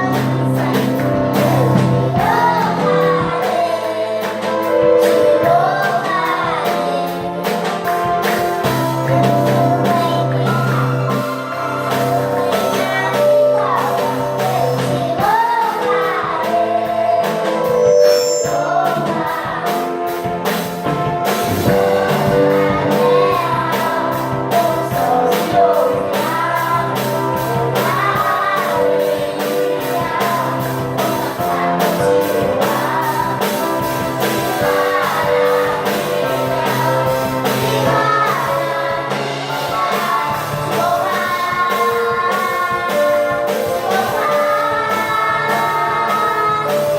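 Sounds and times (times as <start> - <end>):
song with steady beat: 20.2 - 22.9.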